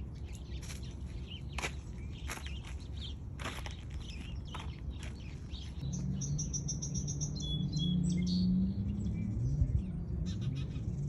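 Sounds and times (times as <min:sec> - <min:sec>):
bird chirping: 0:00.0 - 0:11.0.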